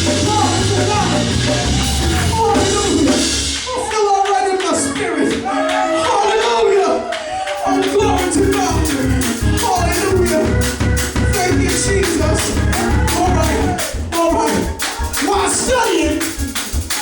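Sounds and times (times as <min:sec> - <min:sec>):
low steady beat: 0:00.0 - 0:05.5, 0:07.6 - 0:17.0
voices singing: 0:00.0 - 0:17.0
rattling tambourine percussion: 0:07.6 - 0:17.0.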